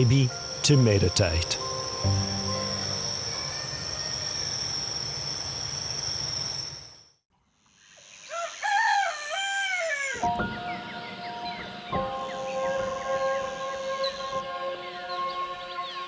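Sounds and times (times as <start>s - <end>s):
steady held tones: 0.0s - 4.5s
insects shrilling: 0.0s - 7.0s
rooster crowing: 8.2s - 10.3s.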